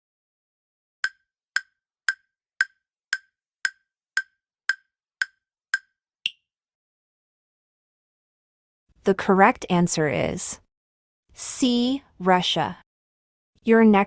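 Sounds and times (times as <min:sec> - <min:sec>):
timer ticks: 0:01.0 - 0:06.4.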